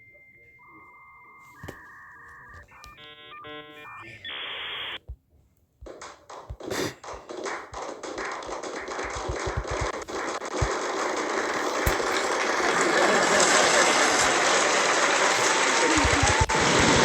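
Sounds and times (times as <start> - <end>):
short multi-pitched beeps: 0.0 - 5.0
steady electronic beep: 0.0 - 5.0
crackling noise with clicks: 1.4 - 5.2, 5.8 - 17.0.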